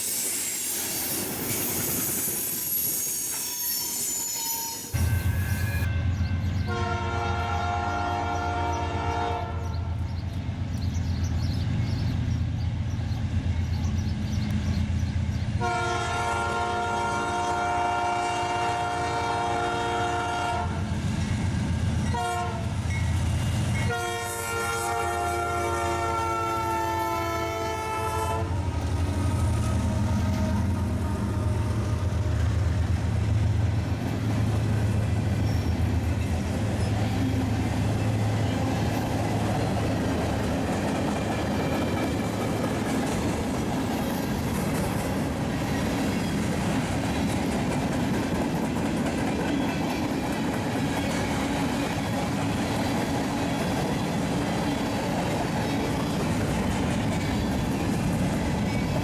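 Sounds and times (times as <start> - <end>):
passing train rumble: 0.0 - 59.0
locomotive air horn blasts: 3.5 - 9.8, 15.6 - 20.8, 22.1 - 22.7, 23.9 - 32.2.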